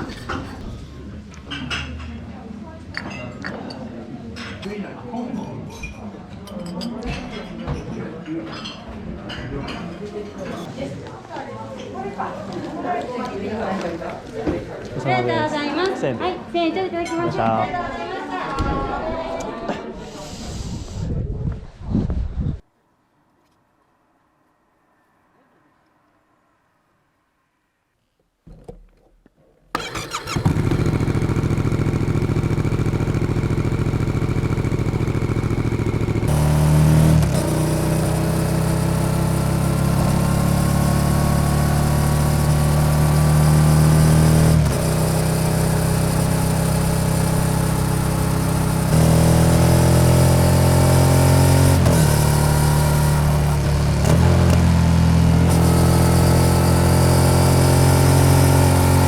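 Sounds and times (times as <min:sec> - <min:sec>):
motorcycle accelerating through gears: 0:29.8 - 0:59.0
motorcycle engine starting and idling: 0:29.8 - 0:59.0.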